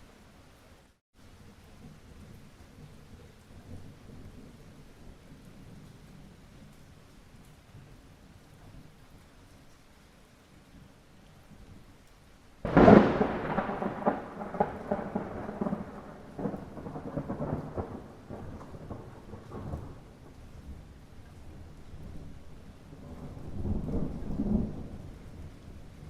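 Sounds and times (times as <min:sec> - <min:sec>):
light rain: 0:00.0 - 0:26.0
thunderclap rumbling: 0:12.6 - 0:20.3, 0:22.9 - 0:26.0.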